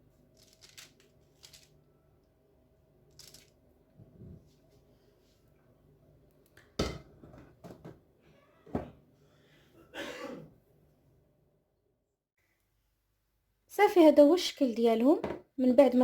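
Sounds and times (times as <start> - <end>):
faint steady hum: 0.0 - 8.3.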